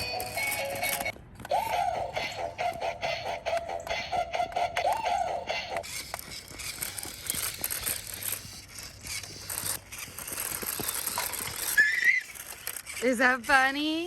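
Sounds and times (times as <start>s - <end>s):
plastic clicks: 0.0s - 2.8s
toy motor grinding: 0.0s - 14.0s.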